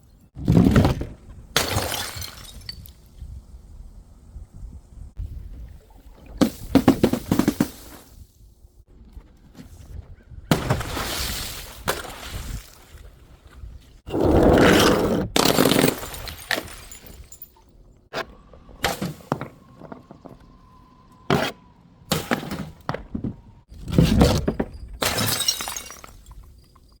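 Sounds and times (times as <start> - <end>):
glass shattering: 1.6 - 2.9, 15.4 - 17.6, 25.0 - 26.8
glass pieces tinkling: 15.6 - 17.6, 25.1 - 27.0.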